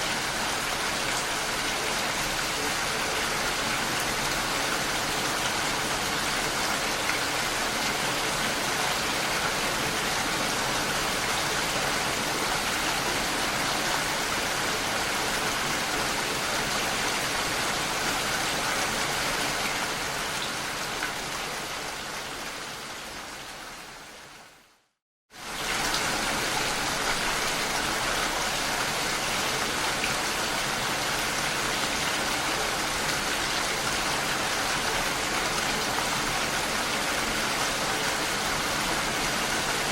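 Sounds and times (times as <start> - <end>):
gentle rain: 0.0 - 39.9.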